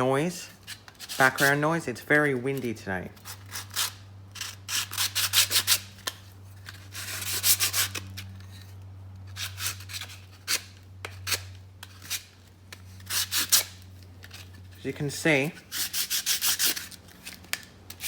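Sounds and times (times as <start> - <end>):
sandpaper rasping on surface: 15.6 - 16.9.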